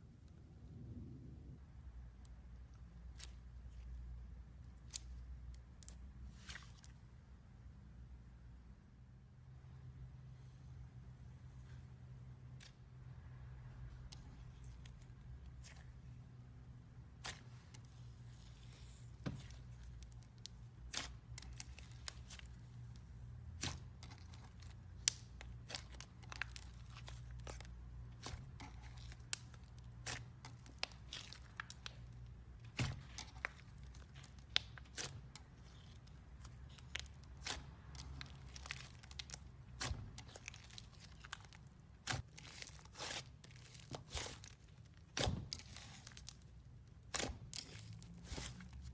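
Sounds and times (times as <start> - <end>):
faint low hum: 0.0 - 48.9
slime crackling and popping: 17.0 - 48.9.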